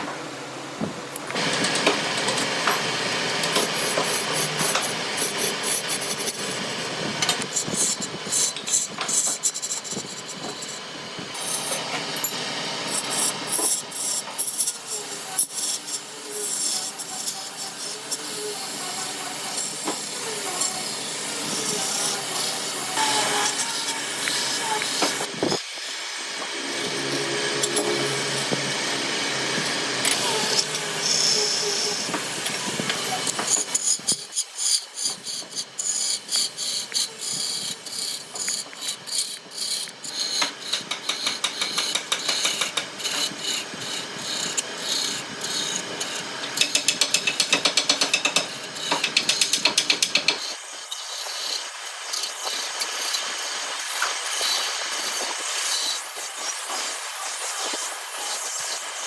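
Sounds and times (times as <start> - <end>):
woodworking tool rasping: 3.3 - 25.6, 26.3 - 58.8.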